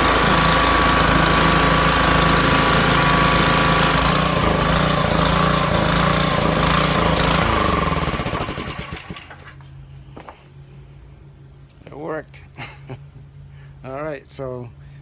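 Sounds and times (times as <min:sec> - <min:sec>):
water spray hissing: 0:00.0 - 0:06.1
pressure washer engine running: 0:00.0 - 0:09.6.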